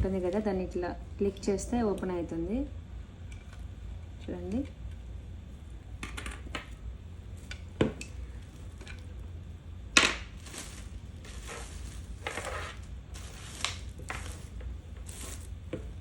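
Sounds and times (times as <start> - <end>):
plastic scraping and rustling: 10.1 - 16.0.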